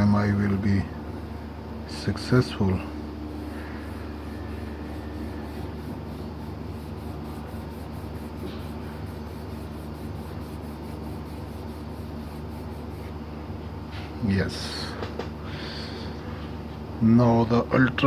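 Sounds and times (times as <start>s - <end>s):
low background hum: 0.0s - 18.0s.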